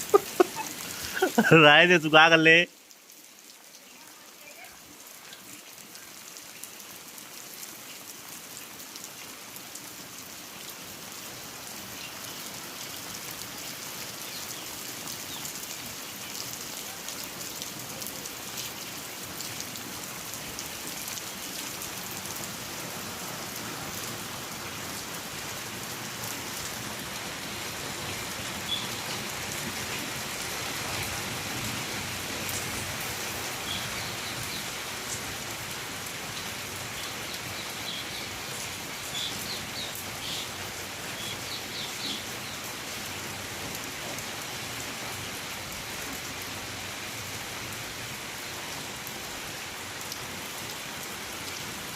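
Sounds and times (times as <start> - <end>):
rain falling: 0.0 - 51.9.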